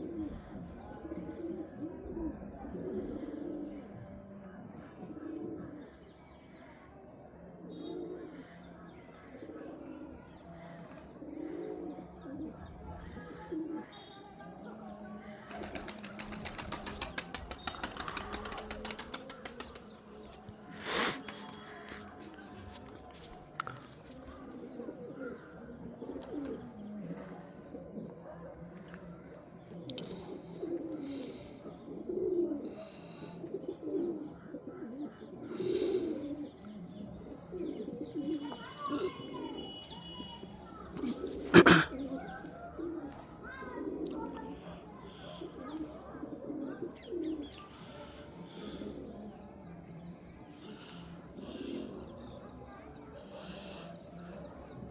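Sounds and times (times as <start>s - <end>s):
pigeons cooing: 0.0s - 14.0s, 14.7s - 20.1s, 20.7s - 54.9s
wings flapping: 15.5s - 20.0s.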